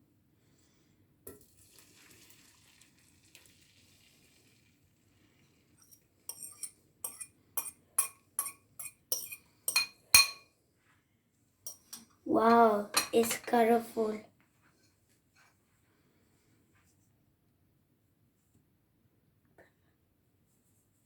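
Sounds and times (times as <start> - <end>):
omelette sizzling in pan: 1.3 - 9.9
metal utensil clinking on dish: 5.8 - 10.4, 11.7 - 12.1, 12.9 - 13.6.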